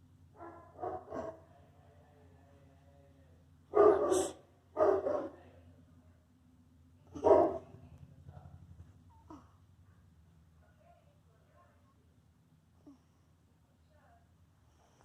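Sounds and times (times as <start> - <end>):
dog barks: 0.4 - 1.5, 3.7 - 5.4, 7.1 - 7.8.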